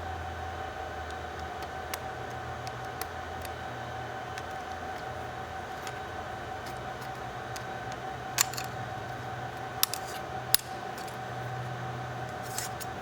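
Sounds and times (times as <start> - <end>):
steady low hum: 0.0 - 13.0
small hard parts clicking: 4.3 - 11.6.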